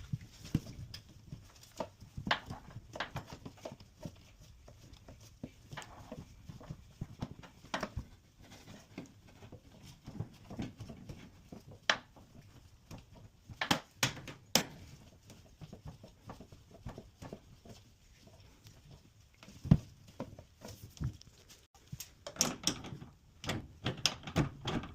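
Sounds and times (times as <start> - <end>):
hard objects clicking and knocking: 0.1 - 15.0.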